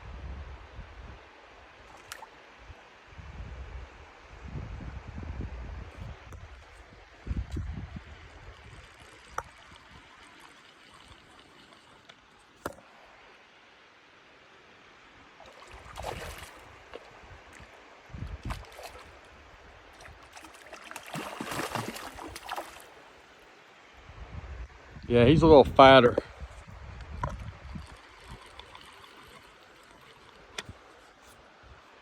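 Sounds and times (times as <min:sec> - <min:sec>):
stream water trickling: 0:01.1 - 0:03.1, 0:06.1 - 0:24.0, 0:25.9 - 0:32.0
splashy water rushes: 0:15.4 - 0:17.2, 0:18.4 - 0:19.3, 0:20.0 - 0:23.0.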